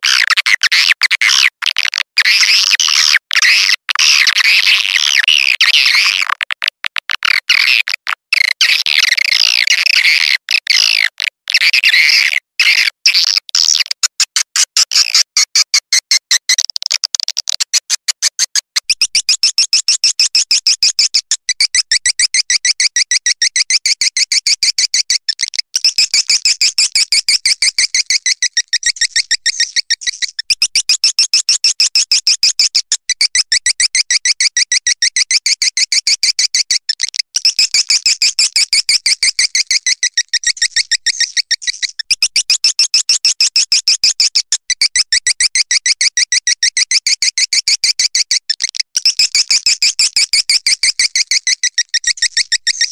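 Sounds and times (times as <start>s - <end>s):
high twittering bird chirps: 21.6s - 31.5s, 36.4s - 52.9s.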